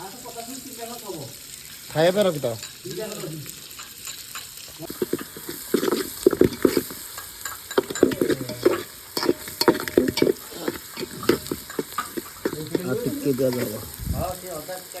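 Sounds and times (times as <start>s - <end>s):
food sizzling in oil: 0.0s - 15.0s
ladle scraping a pan: 2.4s - 14.3s.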